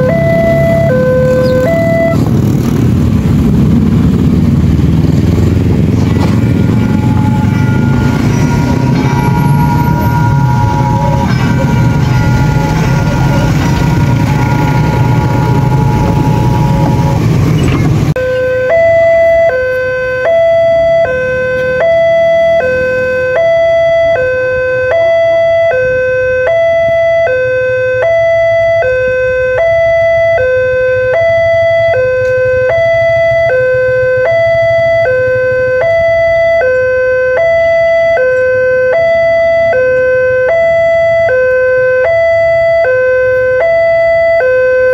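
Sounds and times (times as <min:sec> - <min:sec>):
two-tone crossing alarm: 0:00.0 - 0:02.8, 0:05.0 - 0:44.9
train running past: 0:02.3 - 0:18.1.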